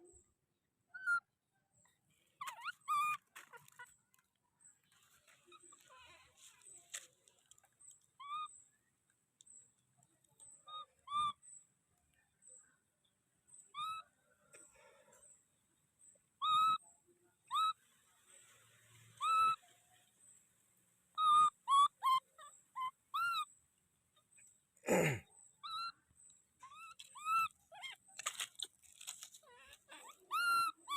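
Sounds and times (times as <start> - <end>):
baby monkey crying: 2.4 - 4.0, 8.2 - 8.5, 10.7 - 11.4, 16.4 - 16.8, 19.2 - 19.6, 21.1 - 23.5, 25.6 - 26.0, 26.6 - 30.9.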